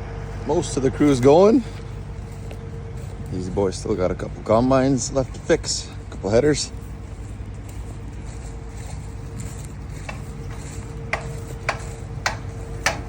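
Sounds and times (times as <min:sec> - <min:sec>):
constant machine whine: 0:00.0 - 0:13.0
machine running with low rumble: 0:00.0 - 0:13.0
sharp clicks: 0:11.1 - 0:13.0.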